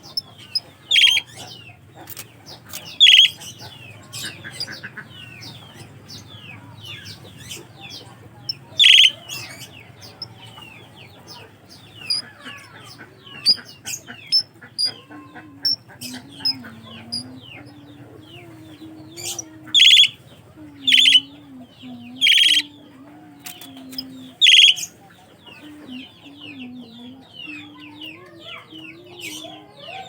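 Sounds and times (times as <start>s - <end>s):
loud harsh bird calls: 0.0s - 21.3s, 22.2s - 22.7s, 24.4s - 25.0s
starlings chirping and whistling: 0.0s - 22.8s, 23.4s - 26.5s
sharp high pips: 19.8s - 20.2s, 24.4s - 24.8s.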